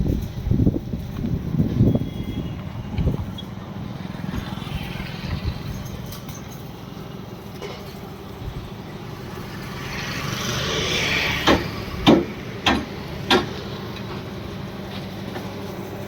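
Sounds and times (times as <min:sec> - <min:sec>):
sharp knocks: 0:11.4 - 0:13.6.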